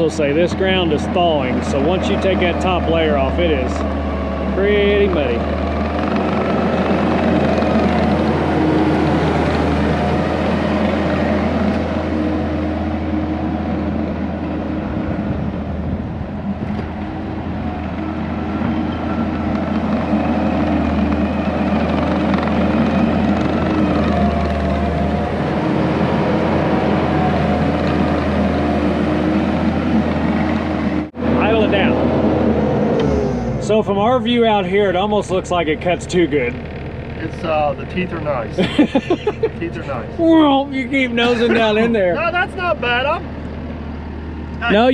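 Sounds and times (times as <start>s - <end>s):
diesel engine running hard: 0.0s - 44.9s.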